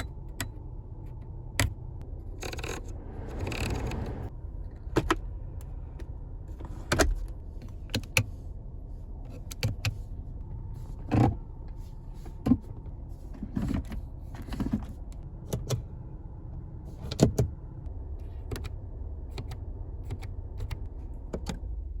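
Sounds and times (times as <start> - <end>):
steady low rumble: 0.0 - 22.0
car switches and buttons clicking: 1.2 - 1.8, 6.9 - 8.3, 9.3 - 10.0, 13.6 - 15.9, 17.0 - 17.6, 18.2 - 21.8.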